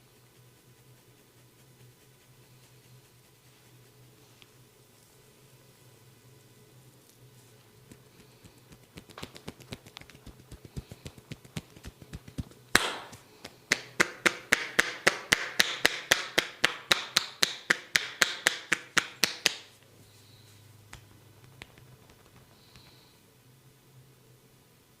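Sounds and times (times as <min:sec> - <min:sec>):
hands tapping and slapping on body: 0:07.9 - 0:19.7, 0:20.9 - 0:22.9.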